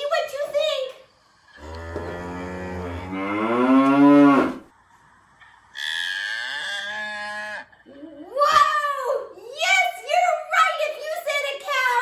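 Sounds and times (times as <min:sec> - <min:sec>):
cow mooing: 0:01.6 - 0:04.7.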